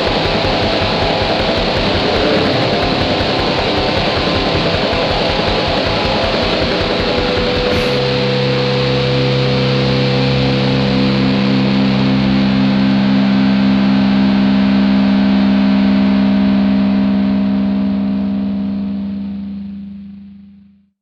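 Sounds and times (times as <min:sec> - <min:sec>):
distorted electric guitar chord: 0:00.0 - 0:20.8.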